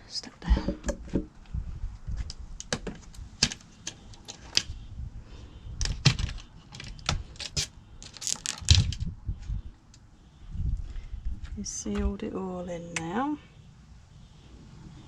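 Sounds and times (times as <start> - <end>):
objects clicking and rattling: 5.8 - 9.1.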